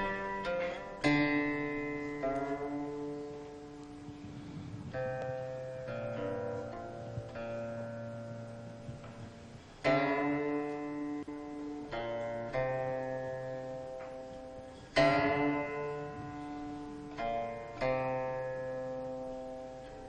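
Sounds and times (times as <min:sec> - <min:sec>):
plucked string instrument music: 0:00.0 - 0:20.0.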